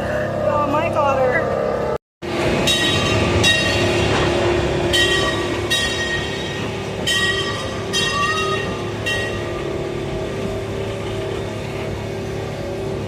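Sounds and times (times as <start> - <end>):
train rumbling: 0.0 - 13.0
high-pitched metallic squeals: 2.6 - 11.7.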